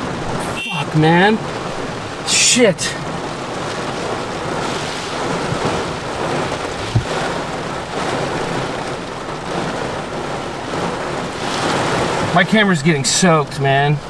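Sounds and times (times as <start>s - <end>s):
rain on vehicle: 0.0s - 14.0s
low thump: 6.7s - 7.4s.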